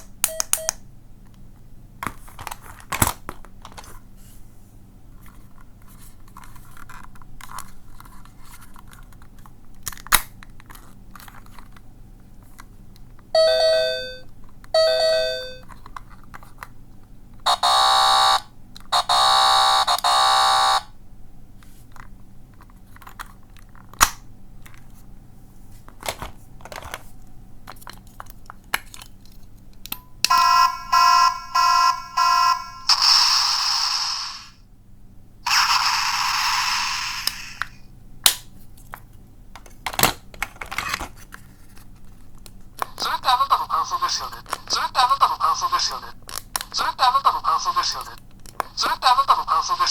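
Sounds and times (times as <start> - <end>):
harsh buzzer: 13.4 - 14.2, 14.8 - 15.6, 17.5 - 21.0, 30.3 - 34.6, 35.5 - 37.6
quick electronic beeps: 30.3 - 33.8
hissing tone: 30.3 - 34.6, 35.5 - 37.8.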